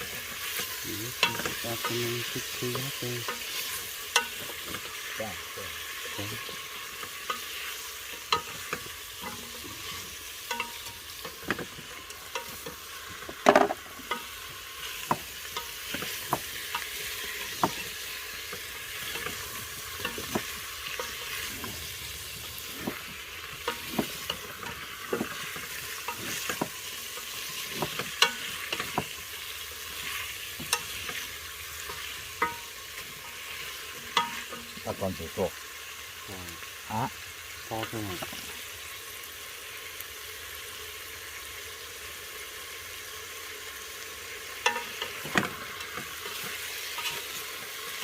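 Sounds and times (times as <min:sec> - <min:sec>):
stir-fry sizzling in a pan: 0:00.0 - 0:48.0
utensil clacking against pan: 0:00.2 - 0:05.1, 0:05.8 - 0:21.8, 0:22.5 - 0:34.8, 0:44.6 - 0:47.4.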